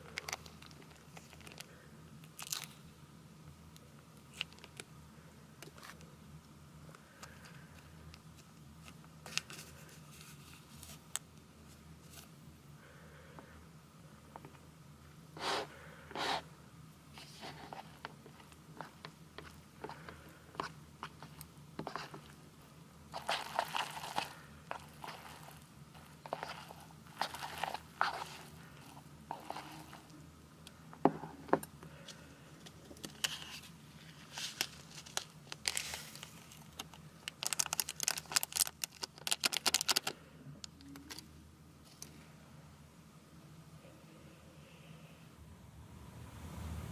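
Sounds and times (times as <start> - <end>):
person chewing noodles: 23.2 - 30.2.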